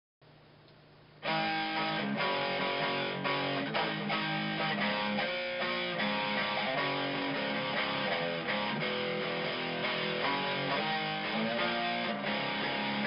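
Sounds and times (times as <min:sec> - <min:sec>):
strummed guitar chords: 0:01.2 - 0:13.0.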